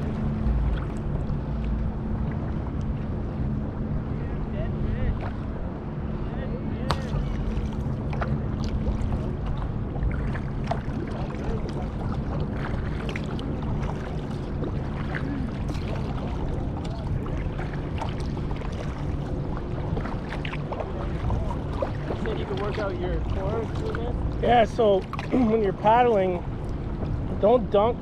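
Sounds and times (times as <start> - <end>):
steady low rumble: 0.0 - 28.0
water splashing against hull: 0.0 - 28.0
small splashes and knocks: 6.9 - 25.6.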